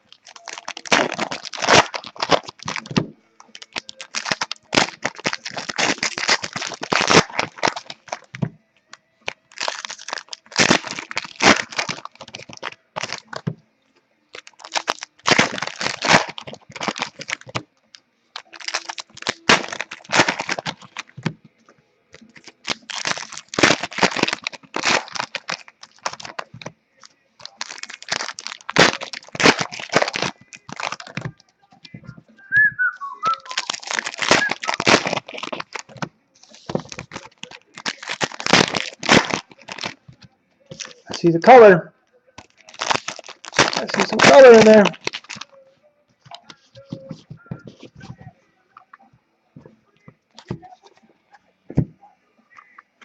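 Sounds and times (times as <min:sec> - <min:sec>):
card pack wrappers tearing open: 0:00.0 - 0:08.5, 0:09.2 - 0:13.5, 0:14.3 - 0:17.7, 0:18.4 - 0:21.4, 0:22.1 - 0:31.4, 0:33.2 - 0:41.6, 0:42.4 - 0:45.5.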